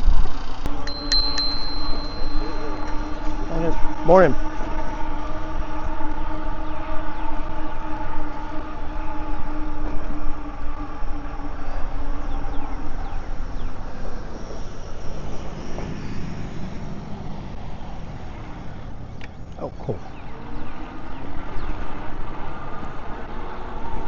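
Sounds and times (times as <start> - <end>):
train horn: 0.7 - 14.4.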